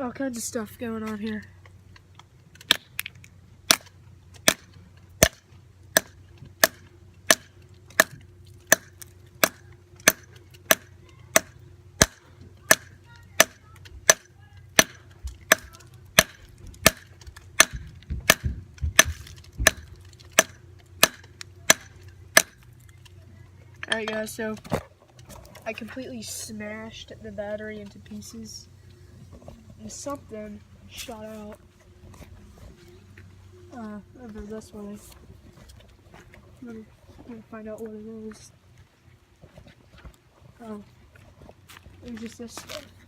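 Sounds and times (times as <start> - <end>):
battery being struck sharply: 6.0 - 22.6
dull thuds: 14.8 - 22.6.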